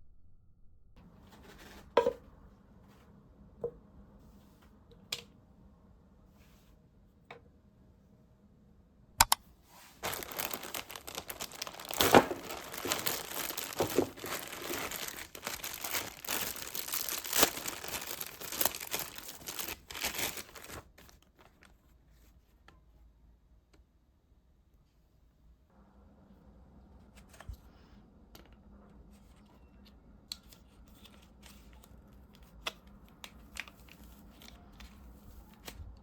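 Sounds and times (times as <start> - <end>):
material crinkling and crumpling: 9.8 - 22.4, 30.5 - 35.9.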